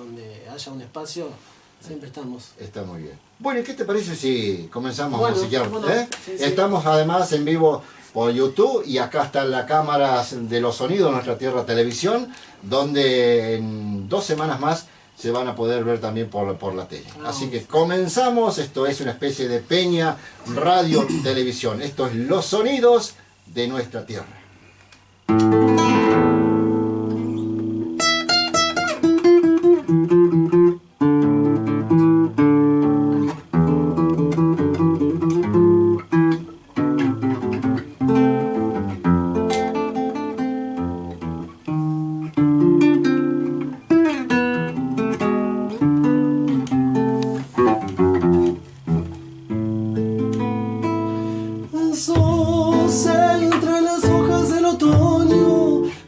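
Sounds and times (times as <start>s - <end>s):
plucked acoustic guitar: 25.3s - 56.0s
low bass notes: 52.0s - 56.0s.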